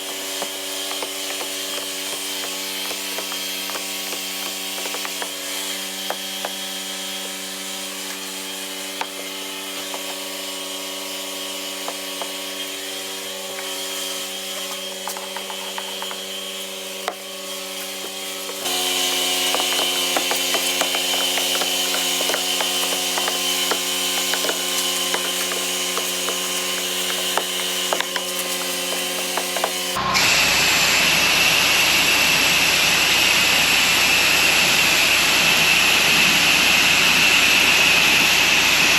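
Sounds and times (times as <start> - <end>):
pressure washer engine running: 0.0 - 38.9
hissing rush of spray: 7.6 - 30.0.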